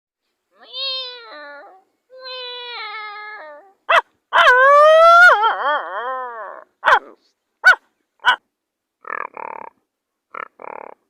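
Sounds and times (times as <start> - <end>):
man imitating animal calls: 9.0 - 11.0.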